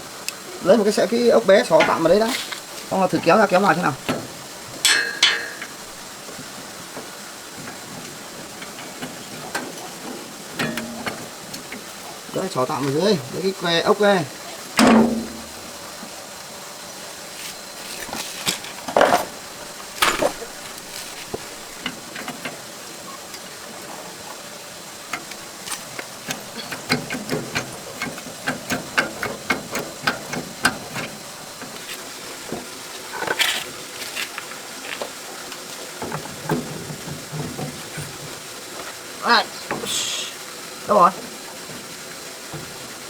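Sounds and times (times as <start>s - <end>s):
metal tools clinking and knocking: 3.6s - 6.1s, 10.5s - 11.8s.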